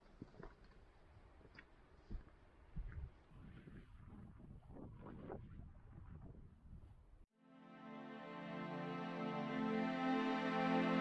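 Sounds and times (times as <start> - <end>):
soft background music chord: 7.4 - 11.0.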